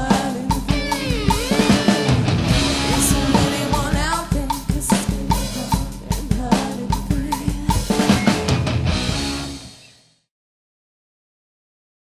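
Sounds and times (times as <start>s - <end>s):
drum kit beat: 0.0s - 9.8s
rock band playing live: 0.0s - 10.0s.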